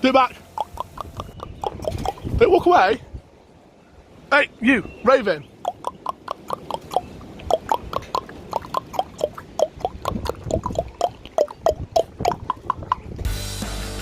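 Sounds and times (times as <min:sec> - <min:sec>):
raven knocking clicks: 0:05.7 - 0:13.0.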